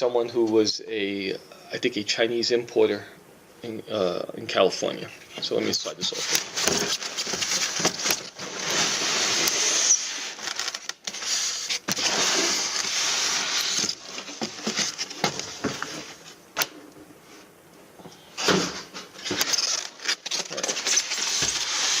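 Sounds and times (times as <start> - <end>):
cardboard box scraping and rustling: 6.0 - 16.3, 19.3 - 22.0.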